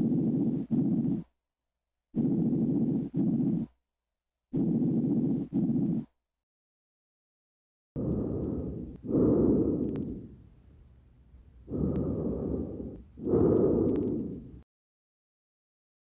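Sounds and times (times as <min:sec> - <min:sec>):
breath sounds through stethoscope: 0:00.0 - 0:01.3, 0:02.2 - 0:03.8, 0:04.5 - 0:06.1, 0:08.0 - 0:10.6, 0:11.6 - 0:14.6.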